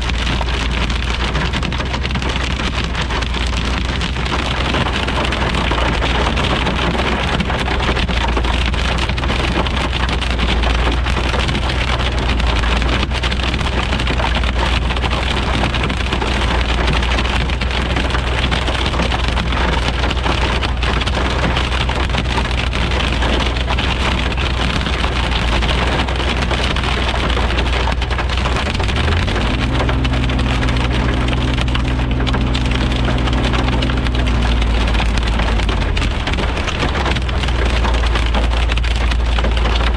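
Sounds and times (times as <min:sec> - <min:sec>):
constant low hum: 0:00.0 - 0:39.9
heavy rain pattering: 0:00.0 - 0:39.9
steady droning tone: 0:27.5 - 0:39.9.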